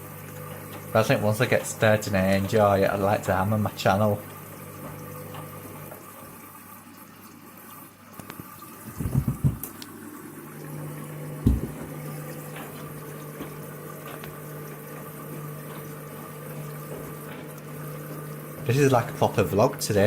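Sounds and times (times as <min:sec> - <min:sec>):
washing machine hum: 0:00.0 - 0:20.0
water running into washing machine: 0:00.0 - 0:20.0.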